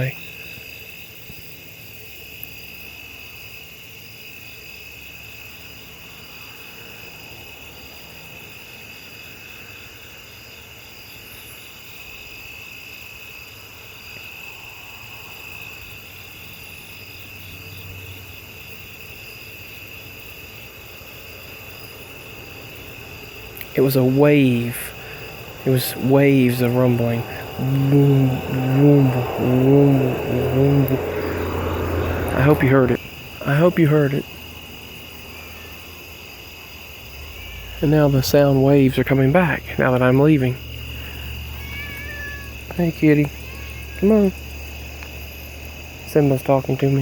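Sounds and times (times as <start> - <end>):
insect chorus trilling: 0.0 - 47.0
faint low hum: 21.7 - 36.0.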